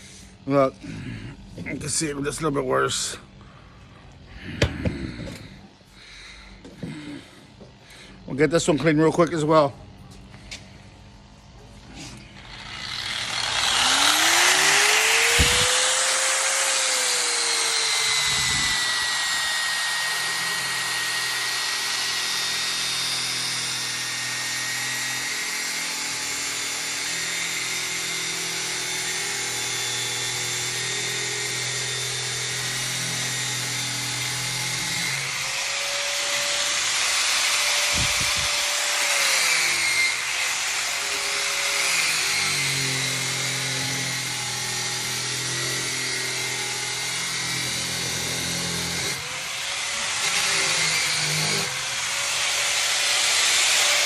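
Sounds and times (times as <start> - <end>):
abrasive grinding on steel: 11.8 - 54.0
grinder motor winding up: 12.1 - 54.0.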